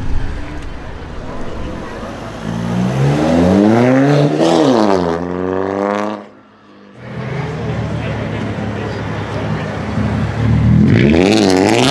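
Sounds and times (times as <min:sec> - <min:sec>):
car engine accelerating: 0:00.0 - 0:11.9.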